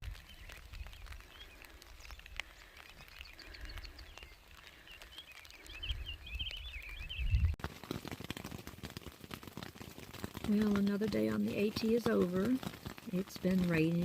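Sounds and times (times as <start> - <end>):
wind rumble on microphone: 0.0 - 4.4, 5.4 - 7.6
bird chirping and twittering: 0.1 - 7.6.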